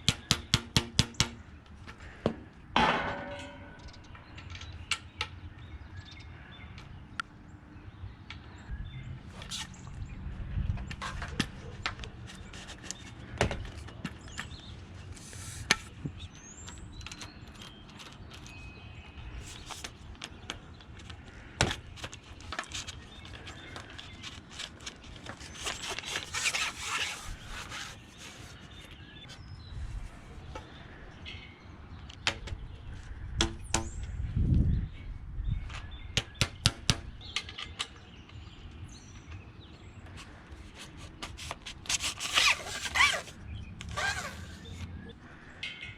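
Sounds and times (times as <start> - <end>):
clamp scraping along pole: 22.5 - 28.8, 40.7 - 45.0.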